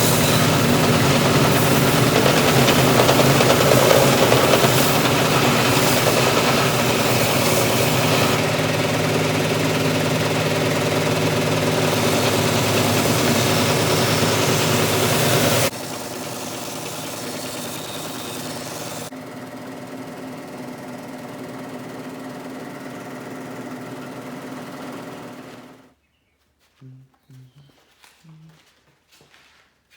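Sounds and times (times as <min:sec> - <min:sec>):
power tool motor running: 0:00.0 - 0:19.1.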